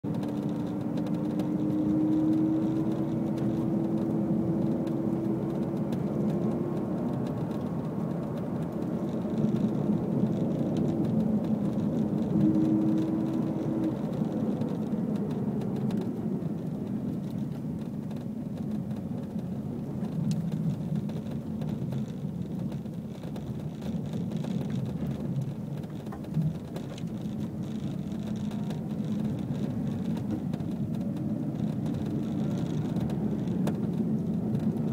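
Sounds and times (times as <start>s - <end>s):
car road and drivetrain noise: 0.0s - 34.9s
rising hum: 12.0s - 16.3s.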